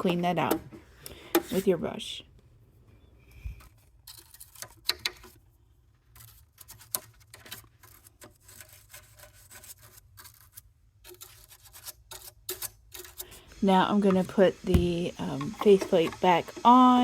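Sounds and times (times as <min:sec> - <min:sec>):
brush scrubbing: 0:06.1 - 0:17.0.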